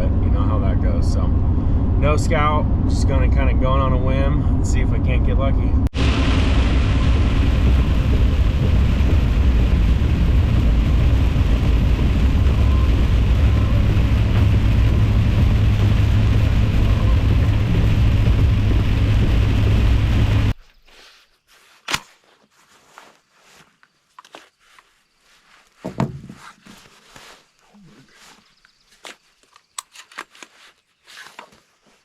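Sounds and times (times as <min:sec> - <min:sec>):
road and engine rumble: 0:00.0 - 0:20.6
sharp click: 0:21.8 - 0:22.2.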